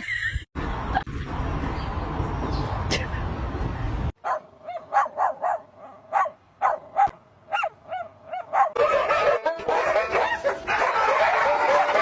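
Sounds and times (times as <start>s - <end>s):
dog yipping and barking: 4.2s - 12.0s.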